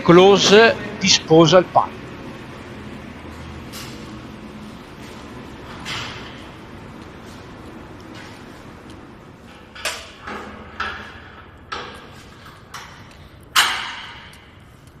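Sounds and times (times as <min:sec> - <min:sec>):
metal clanks and knocks: 0:09.5 - 0:14.6.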